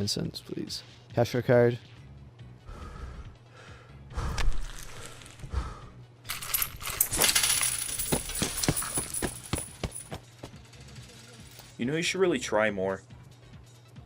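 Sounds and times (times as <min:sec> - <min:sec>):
coins clinking and dropping: 0:06.3 - 0:11.8.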